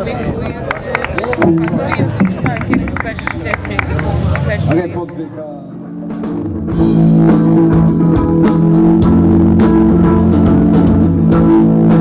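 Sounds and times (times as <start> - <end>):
rock band playing live: 5.9 - 12.0.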